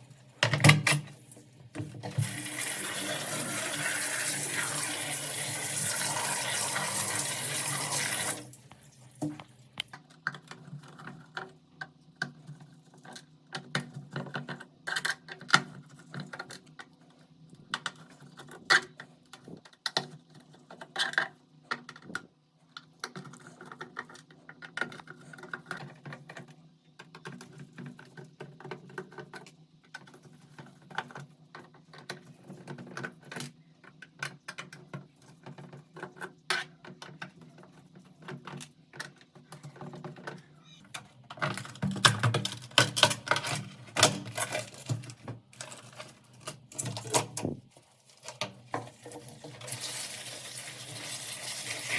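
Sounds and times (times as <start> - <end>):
water tap running: 2.0 - 9.2, 48.9 - 51.9
plastic keyboard parts clattering: 23.1 - 47.6.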